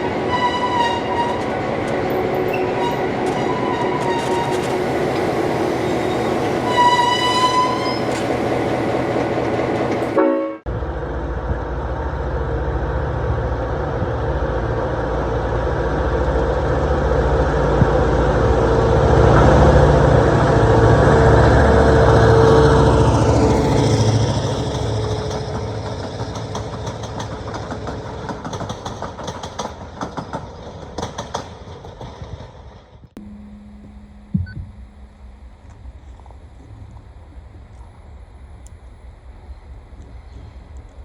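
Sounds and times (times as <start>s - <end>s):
train horn blast: 0.0s - 8.2s, 10.1s - 10.8s
diesel locomotive engine rumble: 0.0s - 41.0s
train passing on jointed track: 0.0s - 41.0s.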